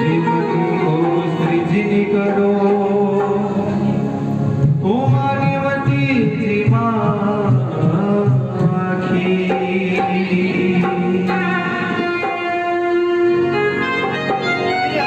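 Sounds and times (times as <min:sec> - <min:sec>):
melodic instrument holding long notes: 0:00.0 - 0:04.6, 0:09.3 - 0:15.0.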